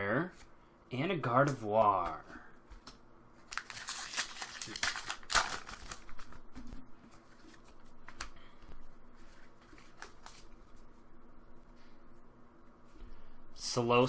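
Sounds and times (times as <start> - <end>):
trading cards being shuffled: 9.2 - 10.8.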